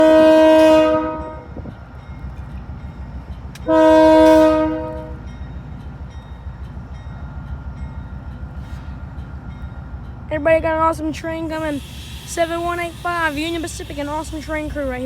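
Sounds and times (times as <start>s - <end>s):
locomotive air horn blasts: 0.0s - 1.6s, 3.7s - 5.3s
low locomotive rumble: 0.0s - 15.0s.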